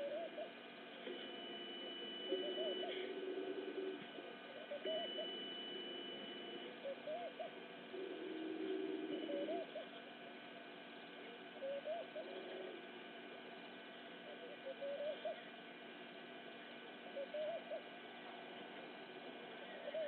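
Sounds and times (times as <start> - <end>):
steady background drone: 0.0 - 20.0
short hooting bird calls: 1.5 - 9.9, 11.6 - 12.8, 14.2 - 15.5, 17.0 - 17.9, 19.6 - 20.0.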